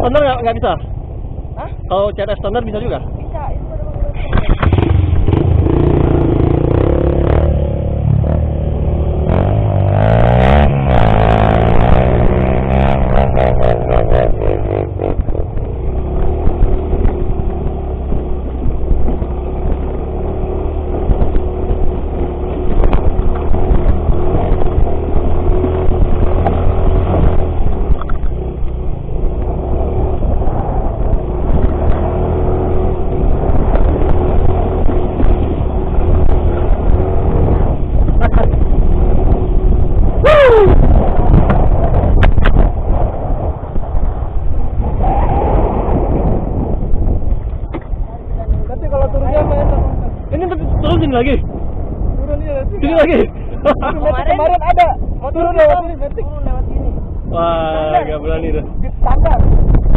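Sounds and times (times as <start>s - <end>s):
motorcycle engine revving: 4.0s - 54.6s.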